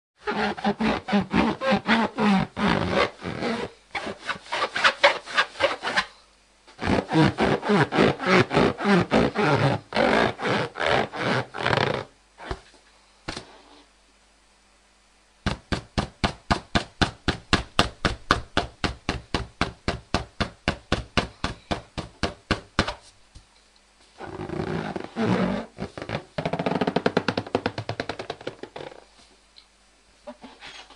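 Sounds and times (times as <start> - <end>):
rubber balloon squeaking: 0.2 - 6.1, 6.7 - 12.7, 24.2 - 29.1.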